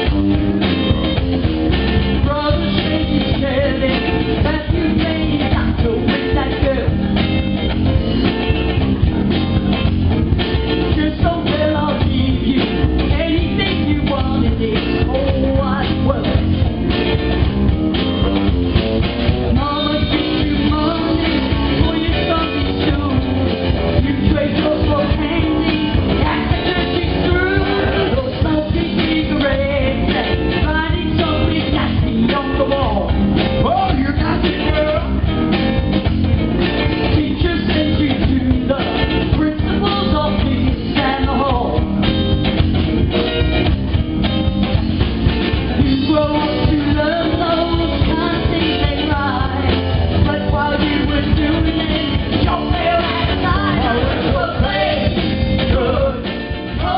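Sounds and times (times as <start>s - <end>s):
live rock band playing: 0.0s - 56.9s
person singing: 2.0s - 7.4s, 10.5s - 16.6s, 19.5s - 35.3s, 36.8s - 41.9s, 45.7s - 56.9s.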